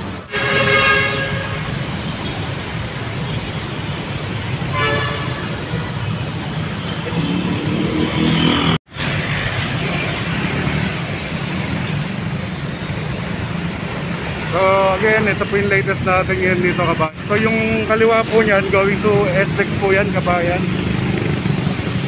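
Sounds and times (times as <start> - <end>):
road traffic passing: 0.0 - 22.0
car horn toot: 0.3 - 1.8, 4.7 - 6.1.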